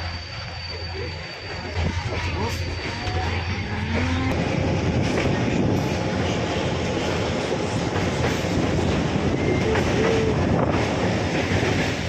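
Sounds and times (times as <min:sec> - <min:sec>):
faint wheel squeal: 0:00.0 - 0:04.3
train wheels rumbling on rail: 0:00.0 - 0:12.0.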